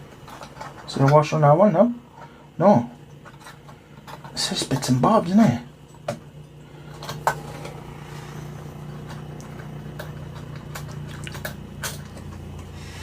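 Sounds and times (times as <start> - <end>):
helicopter droning: 6.6 - 13.0.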